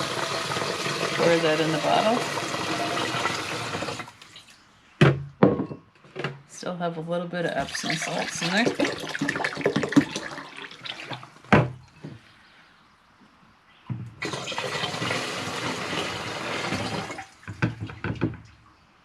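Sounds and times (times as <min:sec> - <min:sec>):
liquid gurgling into bottle: 0:07.7 - 0:11.1.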